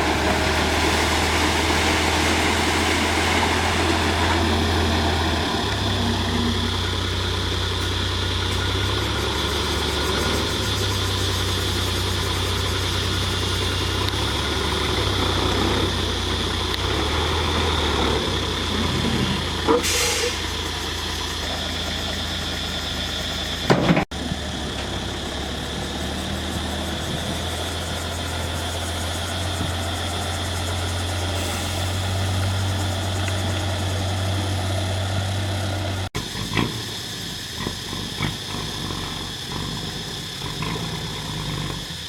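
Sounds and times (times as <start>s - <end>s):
diesel engine running: 0.0s - 42.0s
sharp clank and hiss: 19.7s - 20.9s, 23.6s - 24.1s, 31.2s - 33.2s.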